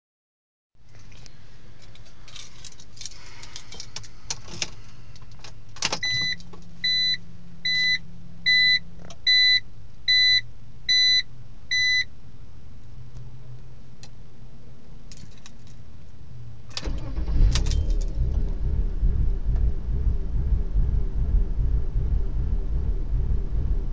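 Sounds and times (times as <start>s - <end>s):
second steady hum: 15.8s - 23.9s
car engine idling: 16.2s - 23.9s.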